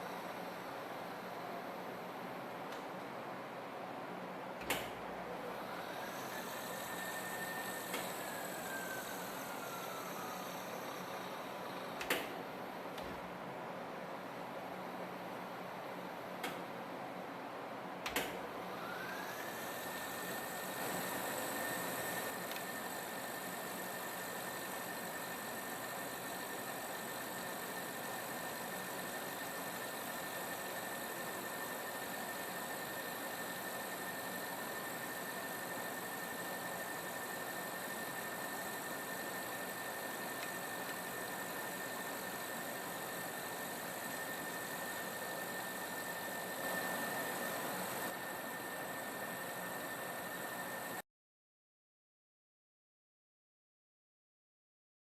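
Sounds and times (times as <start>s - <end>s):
lathe spindle whine: 5.3s - 12.0s, 18.5s - 51.0s
lathe switch click: 18.1s - 18.4s.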